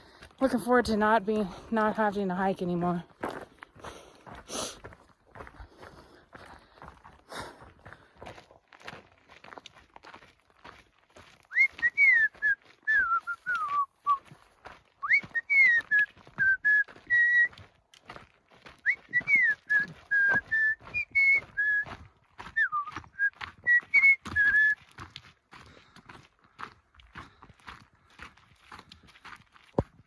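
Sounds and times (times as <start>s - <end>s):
footsteps crunching on trail: 0.0s - 30.0s
person whistling a tune: 11.5s - 14.3s, 15.0s - 17.6s, 18.8s - 21.9s, 22.5s - 24.8s.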